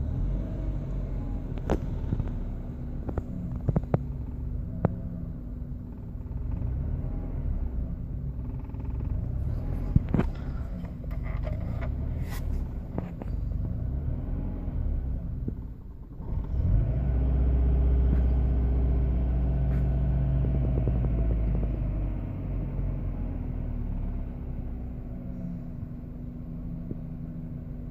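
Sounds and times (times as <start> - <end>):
car engine idling roughly: 8.2 - 13.6.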